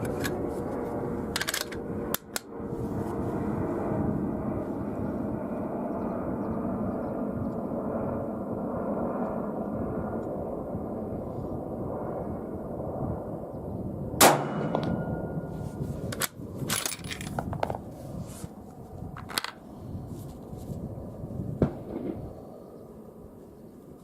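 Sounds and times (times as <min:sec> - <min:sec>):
suppressed rifle shot: 0:14.2 - 0:15.5.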